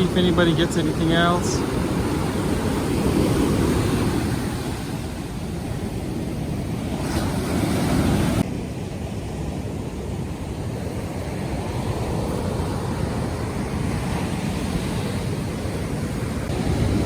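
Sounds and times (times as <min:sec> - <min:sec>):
ocean surf washing on beach: 0:00.0 - 0:17.0
wind on microphone: 0:00.0 - 0:17.0.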